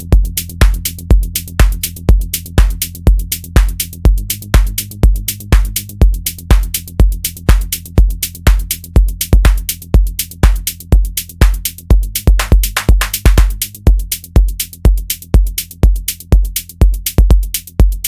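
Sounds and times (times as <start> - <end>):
bass line: 0.0 - 18.0
drum-machine kick drum: 0.0 - 18.0
hi-hat ticks: 0.0 - 18.0.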